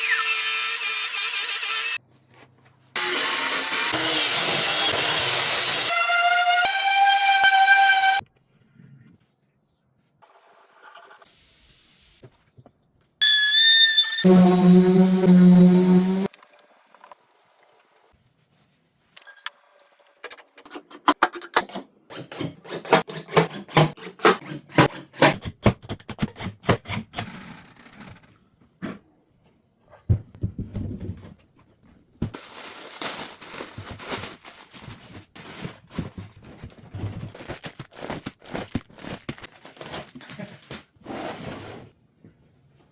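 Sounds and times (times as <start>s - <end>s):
power tools working wood: 3.0s - 8.2s, 13.2s - 16.3s
high-pitched whine: 13.2s - 16.3s.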